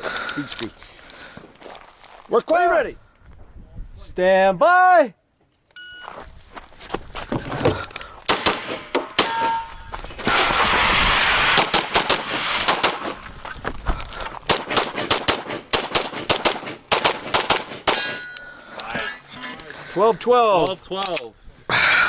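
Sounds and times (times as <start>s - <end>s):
rapid pistol shots: 8.3s - 9.3s, 11.5s - 13.2s, 14.5s - 18.1s.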